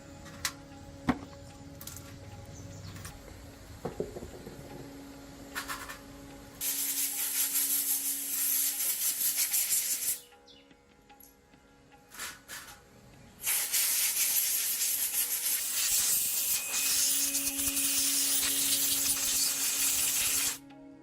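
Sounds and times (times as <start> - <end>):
faint background music: 0.0 - 21.0
short hissing puffs: 6.6 - 10.2, 13.4 - 20.6
spray hissing: 6.6 - 10.2, 13.4 - 20.6.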